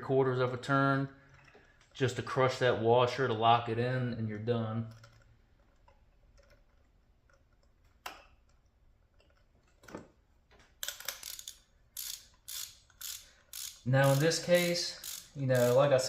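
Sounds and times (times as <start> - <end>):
hand ratchet clicking: 10.8 - 16.0.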